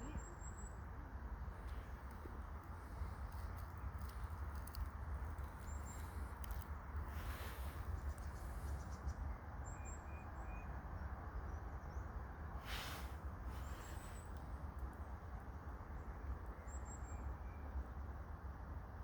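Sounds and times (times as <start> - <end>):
low wind rumble: 0.0 - 19.0
rustling: 1.6 - 8.6.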